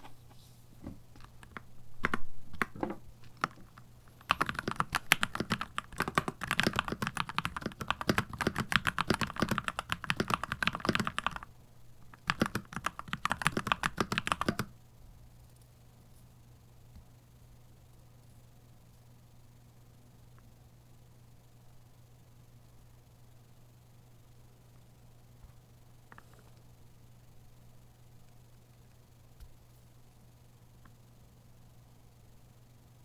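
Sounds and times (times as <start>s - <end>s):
typing on mechanical keyboard: 1.1s - 11.5s, 12.1s - 14.7s.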